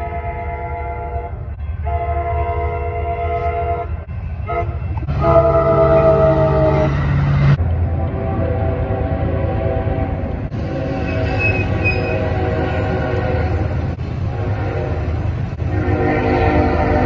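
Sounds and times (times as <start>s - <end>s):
train air horn: 0.0s - 17.0s
train rumbling: 0.0s - 17.0s.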